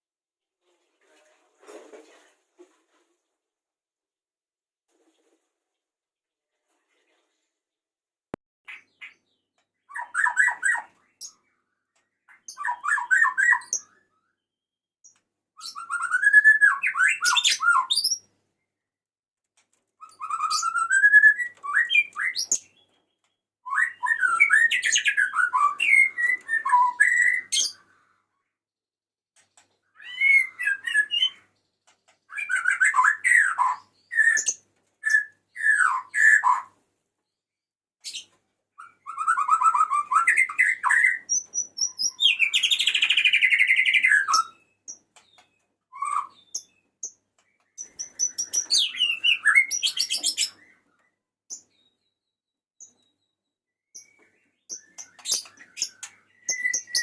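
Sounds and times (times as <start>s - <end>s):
bird singing whistled phrases: 12.3s - 14.5s, 15.6s - 18.2s, 20.0s - 22.8s, 23.6s - 27.8s, 29.9s - 31.5s, 32.3s - 36.7s, 38.8s - 44.6s, 45.9s - 46.8s, 47.9s - 50.8s, 54.0s - 57.0s.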